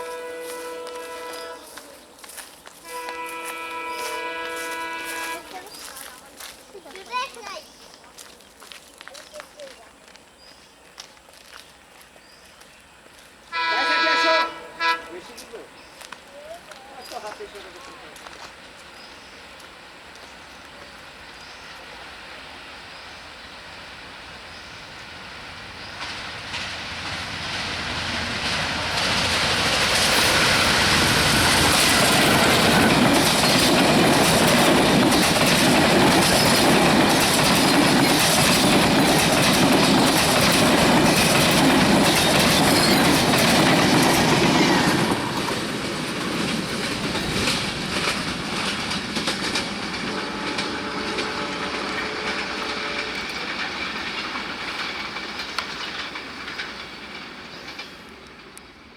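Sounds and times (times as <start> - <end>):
train wheels clattering over rail joints: 25.4 - 58.9.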